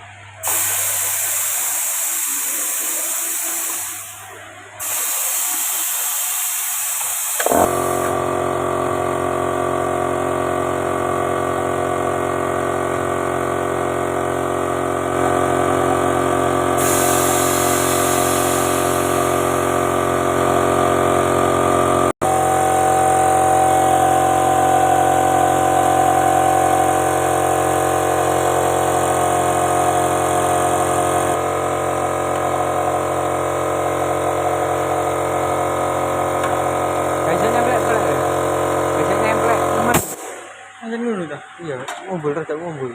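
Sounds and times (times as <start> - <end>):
workshop machinery droning: 0.0 - 42.9.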